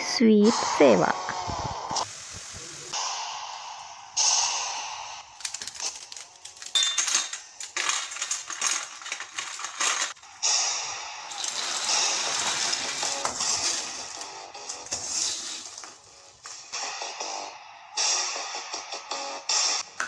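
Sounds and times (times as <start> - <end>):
deep-frying hiss in oil: 2.0 - 3.9, 11.3 - 16.5
crisp crunching: 5.3 - 6.8, 7.4 - 10.3, 11.3 - 16.7
clattering clicks: 5.4 - 10.2.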